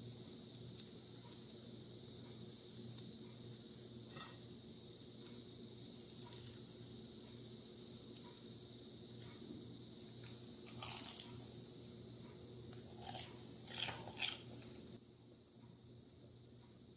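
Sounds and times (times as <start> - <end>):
food crunches: 5.1 - 8.2, 10.6 - 11.6, 12.7 - 14.7
person chewing food: 10.7 - 11.6, 12.6 - 14.7.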